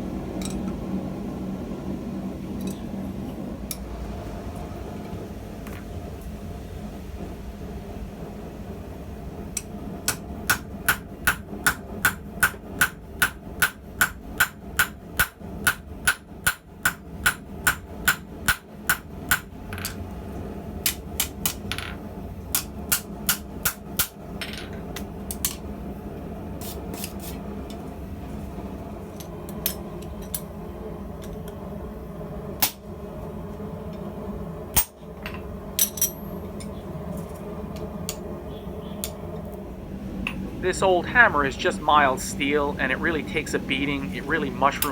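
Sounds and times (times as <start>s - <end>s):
hammer striking hot steel on anvil: 9.5s - 20.0s, 20.8s - 21.7s, 22.5s - 24.2s, 34.7s - 35.0s.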